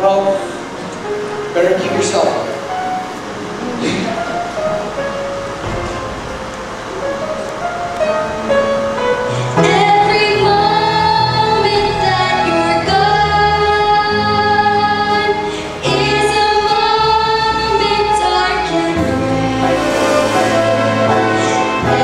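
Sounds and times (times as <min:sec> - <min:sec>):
instrumental accompaniment: 0:00.0 - 0:22.0
woman singing: 0:09.5 - 0:22.0.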